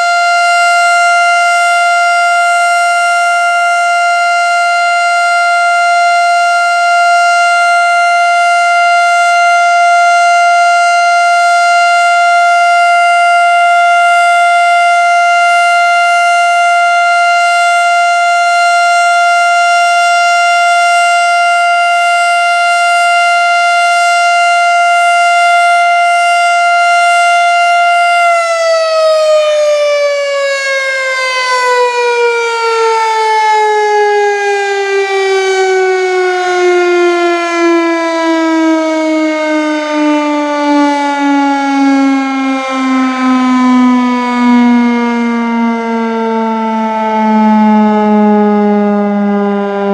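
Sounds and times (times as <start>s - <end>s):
mechanical warning siren: 0.0s - 49.9s.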